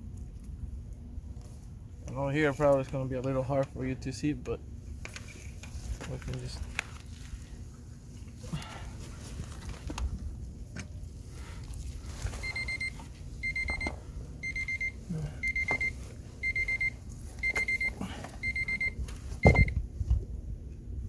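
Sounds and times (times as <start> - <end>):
electronic beeper high pips: 12.4 - 19.7.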